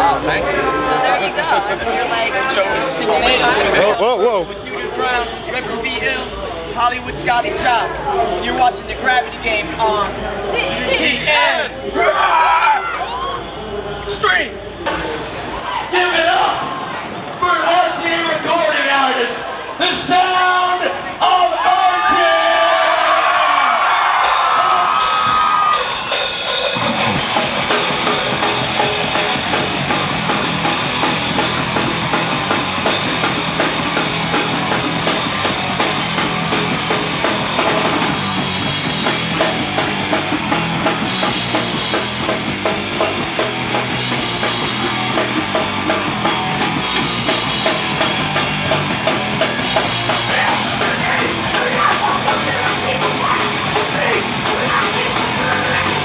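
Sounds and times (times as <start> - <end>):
drum kit: 24.1 - 56.0
live rock band playing: 24.1 - 56.0
electric guitar: 24.3 - 56.0.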